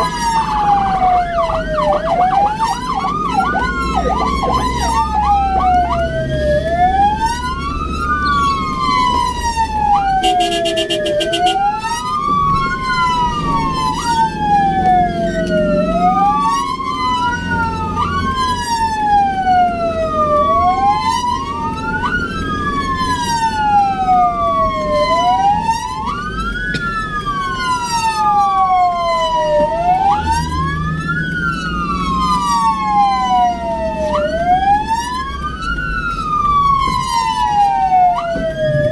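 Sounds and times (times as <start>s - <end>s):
ambulance siren wailing: 0.0s - 38.9s
horn blast: 10.2s - 11.7s.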